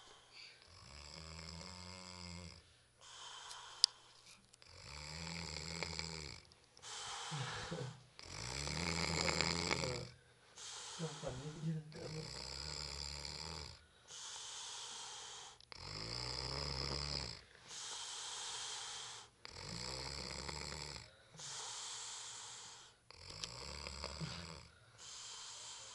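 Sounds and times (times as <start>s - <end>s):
person snoring heavily: 0.0s - 3.8s, 4.6s - 25.9s
hissing breath: 3.0s - 4.3s, 6.8s - 8.0s, 10.5s - 11.7s, 14.0s - 15.7s, 17.6s - 19.4s, 21.3s - 23.0s, 24.2s - 25.9s.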